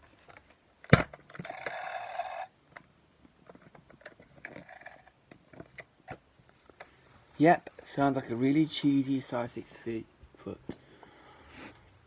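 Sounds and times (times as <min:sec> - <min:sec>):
toy buzzing and scraping: 0:01.4 - 0:02.5, 0:04.1 - 0:05.2.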